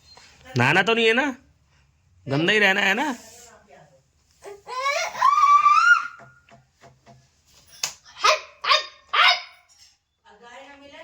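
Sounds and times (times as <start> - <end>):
dog barking: 8.2 - 9.7.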